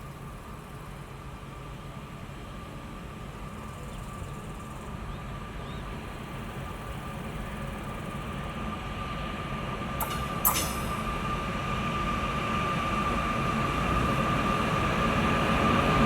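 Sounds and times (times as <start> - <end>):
train rumbling: 9.3 - 16.0.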